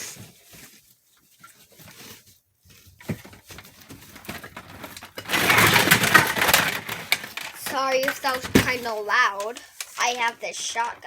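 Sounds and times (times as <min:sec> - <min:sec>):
plastic toy handling clicks: 0:05.0 - 0:11.0
loud rapid rattling clatter: 0:05.1 - 0:08.8.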